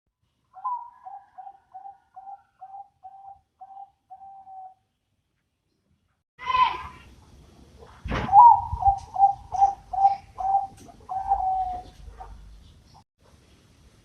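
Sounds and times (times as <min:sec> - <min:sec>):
dove cooing: 0:00.6 - 0:04.8, 0:08.3 - 0:12.6.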